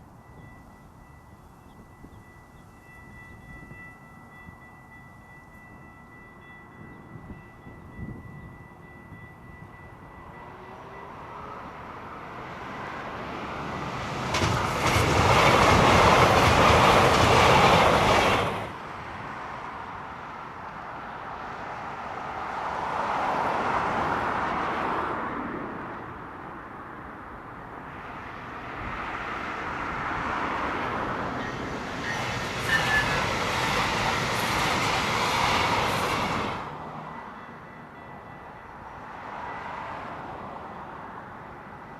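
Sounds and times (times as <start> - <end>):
train wheels on rails: 12.3 - 19.4, 28.9 - 40.7.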